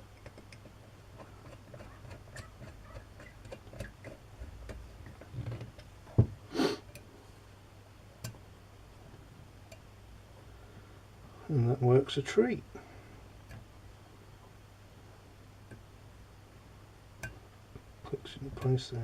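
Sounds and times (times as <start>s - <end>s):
small metal clicks: 0.0s - 6.0s.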